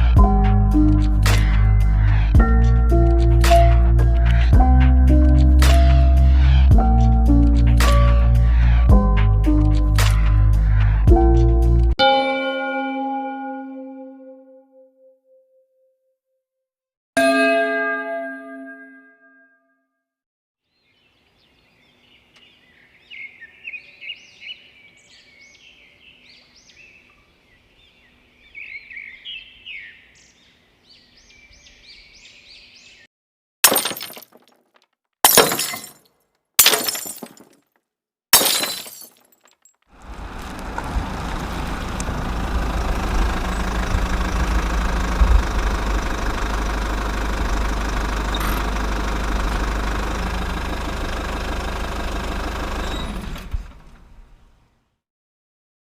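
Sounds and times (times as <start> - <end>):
small birds chirping: 20.7 - 33.1, 41.0 - 44.4
glass breaking: 33.6 - 37.7, 38.4 - 39.7
engine-like rumble: 40.0 - 54.6.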